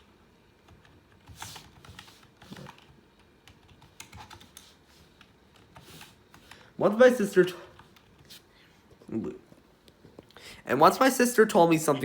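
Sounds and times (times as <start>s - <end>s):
computer keyboard keystrokes: 0.7s - 6.6s.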